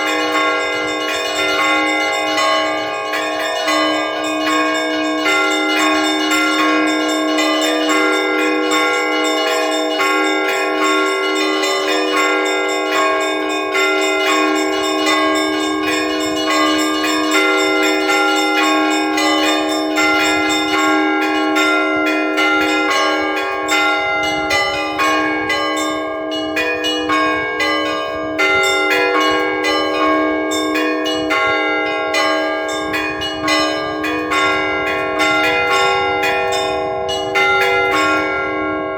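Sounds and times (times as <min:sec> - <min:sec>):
church bells pealing: 0:00.0 - 0:38.9
low bell ringing: 0:00.0 - 0:38.9.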